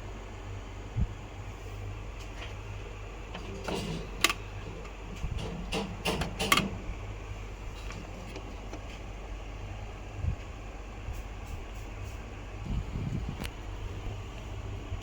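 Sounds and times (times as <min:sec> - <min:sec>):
steady low hum: 0:00.0 - 0:15.0
sharp mechanical clicks and knocks: 0:03.3 - 0:07.1, 0:07.7 - 0:09.0.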